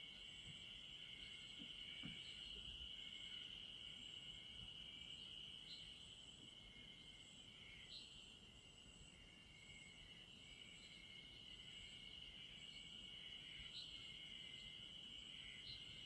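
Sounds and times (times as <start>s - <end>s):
insects trilling: 0.0s - 16.0s.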